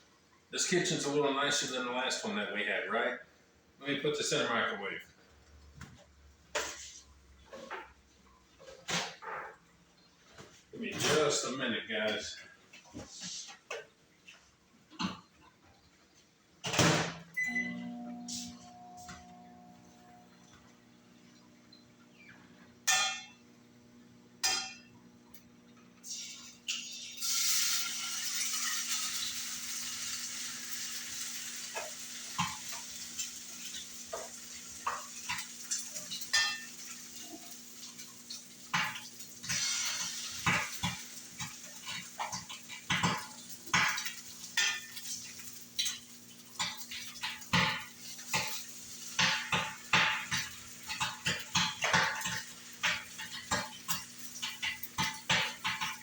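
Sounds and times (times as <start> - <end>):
food sizzling in a frying pan: 26.0 - 56.0
utensil scraping and clinking pans: 26.0 - 56.0.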